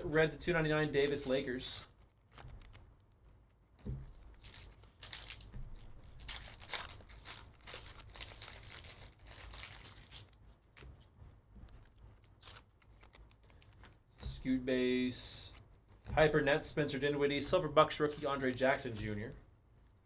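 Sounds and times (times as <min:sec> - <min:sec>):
card pack wrappers tearing and crinkling: 0:00.5 - 0:03.1, 0:04.0 - 0:10.5, 0:11.8 - 0:14.4, 0:17.5 - 0:19.3.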